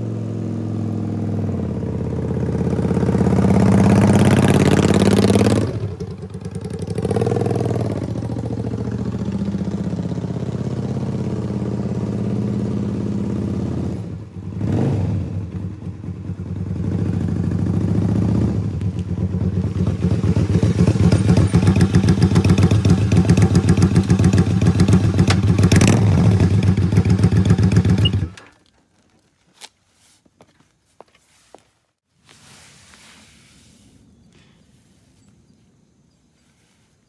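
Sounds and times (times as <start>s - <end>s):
motorcycle engine running: 0.0s - 28.4s.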